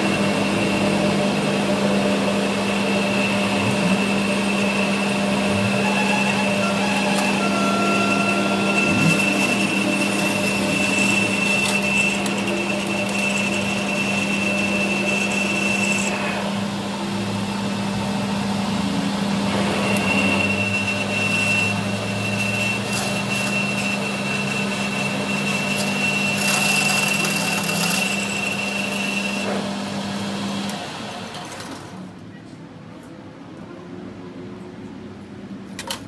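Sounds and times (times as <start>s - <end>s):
machine motor humming: 0.0s - 28.2s
high motor whine: 0.0s - 29.5s.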